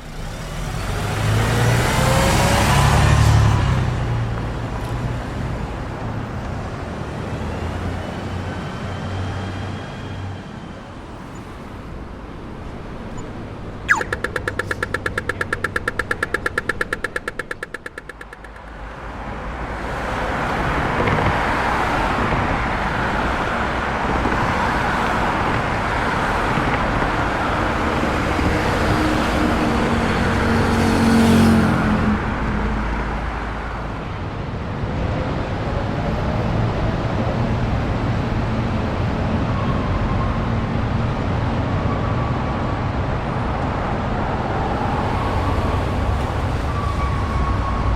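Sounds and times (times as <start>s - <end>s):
road noise rushing: 0.0s - 47.9s
vehicles passing: 0.0s - 47.9s
rapid even ticking: 13.9s - 18.8s.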